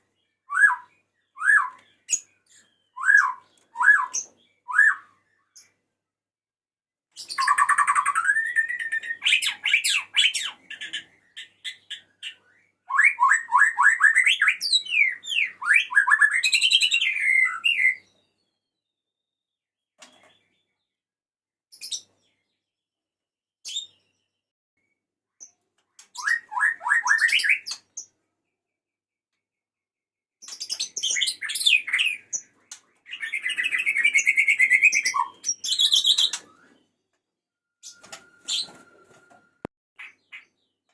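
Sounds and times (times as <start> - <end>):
bird whistling and trilling: 0.4 - 5.3, 7.2 - 18.1, 26.0 - 27.9, 30.5 - 37.0, 37.7 - 39.4.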